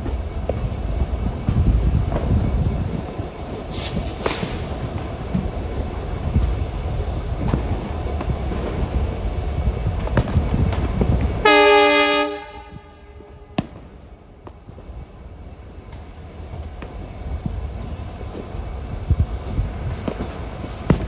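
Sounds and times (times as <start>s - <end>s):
train rumbling: 0.0s - 21.0s
locomotive horn honk: 11.4s - 13.4s.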